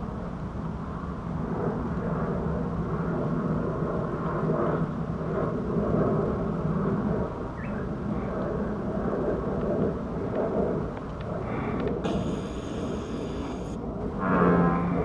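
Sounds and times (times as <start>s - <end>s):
bullfrogs calling: 12.0s - 13.8s.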